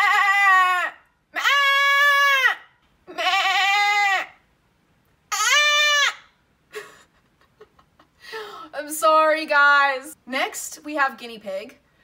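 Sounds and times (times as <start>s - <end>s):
woman imitating goat bleats: 0.0s - 4.3s, 5.3s - 6.2s.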